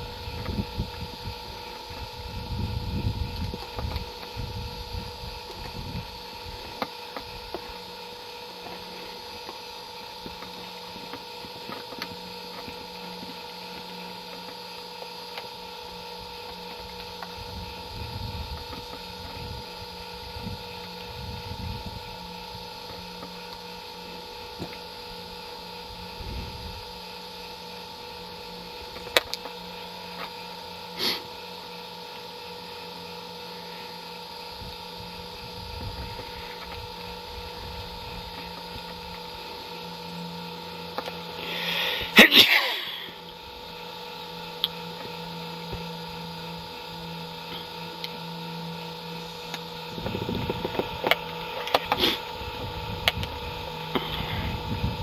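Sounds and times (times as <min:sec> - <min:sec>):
wind on microphone: 0:00.0 - 0:06.1, 0:17.4 - 0:22.3, 0:26.0 - 0:26.8, 0:34.6 - 0:38.3, 0:49.9 - 0:51.1, 0:52.4 - 0:55.0
electrical hum: 0:00.0 - 0:55.0.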